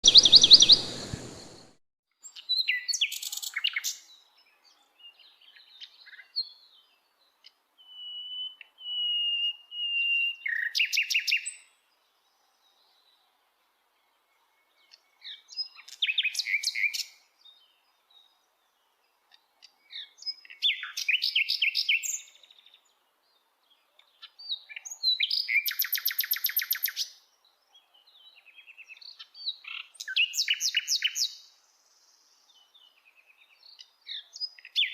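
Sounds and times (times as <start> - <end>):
burst of noise: 0.0 - 1.8
nightingale singing: 0.0 - 11.9, 14.1 - 23.0, 23.7 - 34.9.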